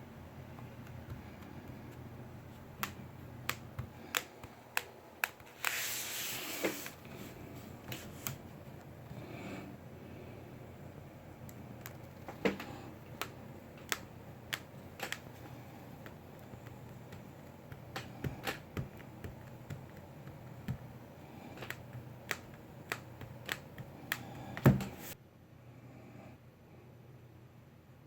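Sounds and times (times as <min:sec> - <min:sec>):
low steady hum: 0:00.0 - 0:28.0
light clicks and taps on tablet: 0:00.5 - 0:05.8, 0:11.4 - 0:24.8.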